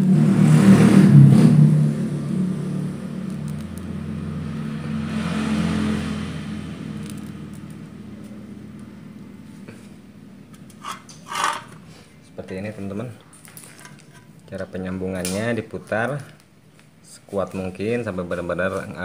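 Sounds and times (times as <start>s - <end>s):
vehicle engine running: 0.0s - 10.8s.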